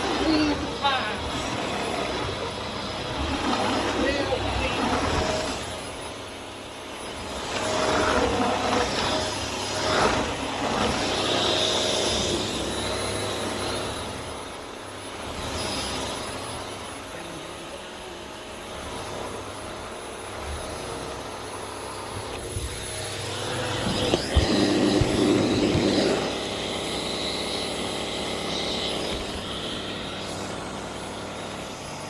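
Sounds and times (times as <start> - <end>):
upright vacuum cleaner running: 0.0 - 32.0.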